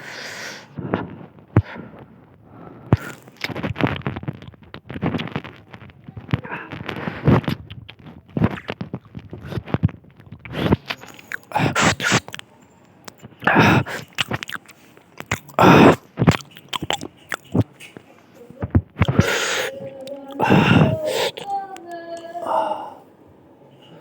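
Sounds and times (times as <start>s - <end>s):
person chewing and crunching: 2.9s - 18.0s, 18.8s - 21.5s.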